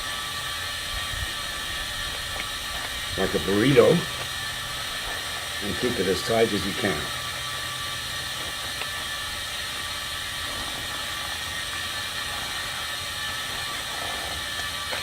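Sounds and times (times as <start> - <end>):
small machine whirring: 0.0 - 15.0.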